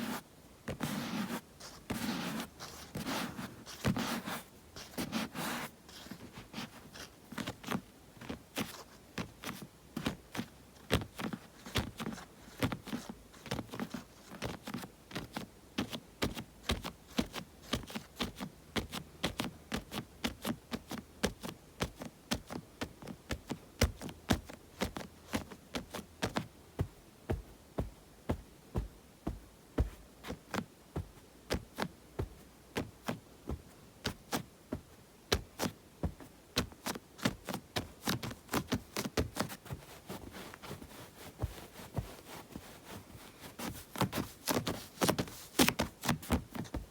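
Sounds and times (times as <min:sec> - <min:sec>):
palms rustling: 0:24.4 - 0:46.9.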